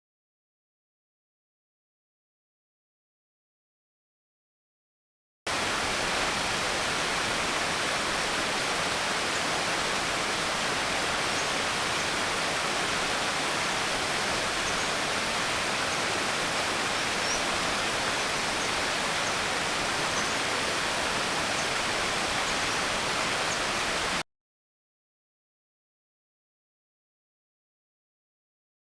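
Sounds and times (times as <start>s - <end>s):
rushing water: 5.5s - 24.2s.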